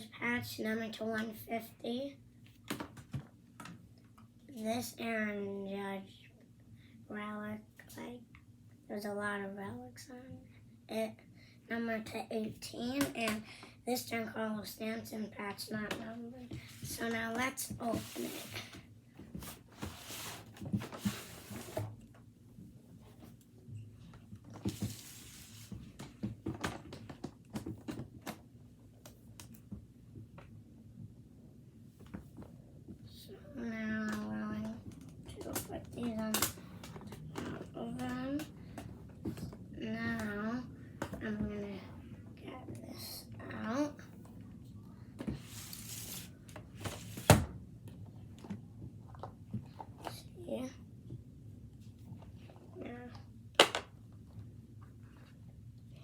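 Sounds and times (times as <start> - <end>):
rustling scrape: 17.8 - 18.8, 19.4 - 22.0, 24.7 - 25.8, 45.4 - 47.3.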